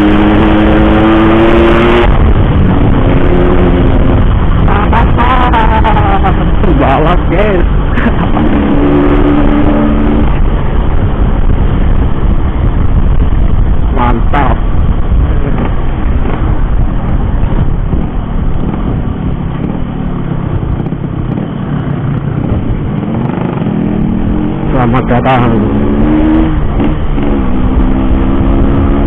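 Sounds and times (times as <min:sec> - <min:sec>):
motorcycle engine: 0:00.0 - 0:13.9, 0:14.6 - 0:29.0
wind rush on microphone: 0:00.0 - 0:29.0.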